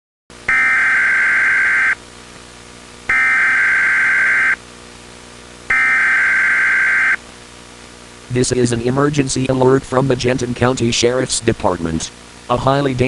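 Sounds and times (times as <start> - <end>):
steady hum and hiss: 0.3 - 13.0
electronic data screech: 0.5 - 2.0, 3.1 - 4.6, 5.7 - 7.2.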